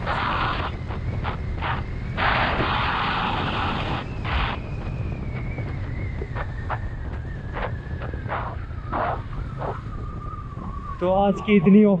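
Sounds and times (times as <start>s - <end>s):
hissing bursts: 0.0s - 4.7s, 7.6s - 10.8s
motorcycle engine rumble: 0.0s - 12.0s.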